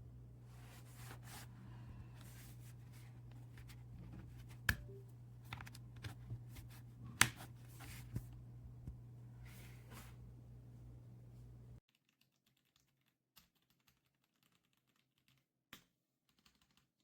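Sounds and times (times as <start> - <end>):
steady low hum: 0.0 - 11.8
rustling and handling noises: 0.4 - 10.4.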